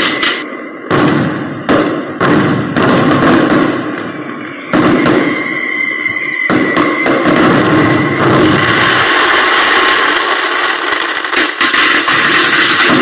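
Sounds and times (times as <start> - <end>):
firecrackers banging: 0.0 - 13.0
steady high tone: 3.8 - 9.1.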